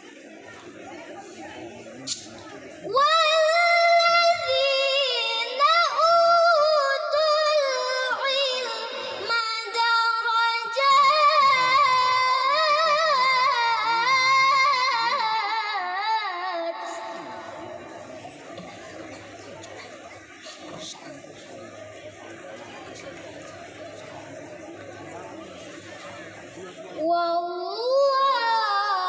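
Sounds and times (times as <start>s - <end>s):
girl reciting melodically: 2.8s - 18.0s, 26.9s - 29.0s.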